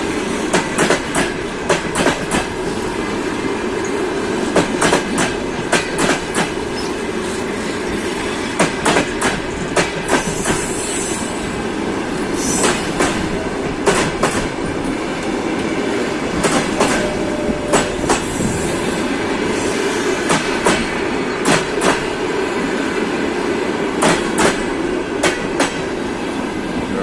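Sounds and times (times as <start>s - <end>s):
train rolling noise: 0.0s - 27.0s
train wheels clacking over rail joints: 0.4s - 2.8s, 3.8s - 7.0s, 8.4s - 10.8s, 12.4s - 14.8s, 16.3s - 18.4s, 20.2s - 22.2s, 24.0s - 26.0s.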